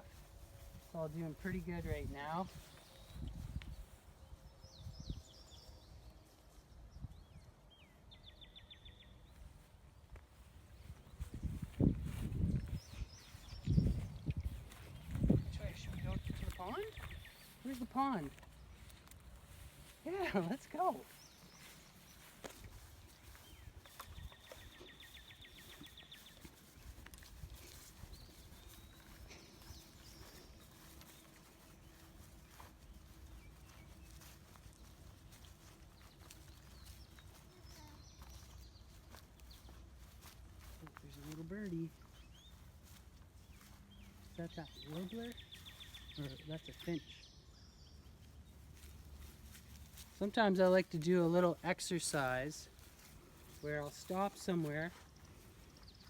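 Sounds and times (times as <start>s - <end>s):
songbird trilling: 12.7s - 18.9s.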